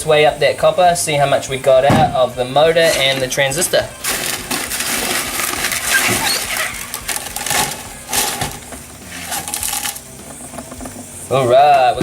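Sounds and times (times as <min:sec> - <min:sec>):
copper wire rustling and clicking: 0:01.8 - 0:11.4.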